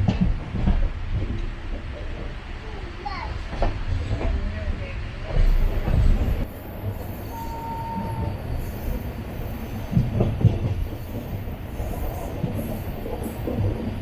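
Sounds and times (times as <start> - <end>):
train knocks: 0.0 - 2.4, 3.2 - 14.0
train rumbling on rails: 0.0 - 14.0.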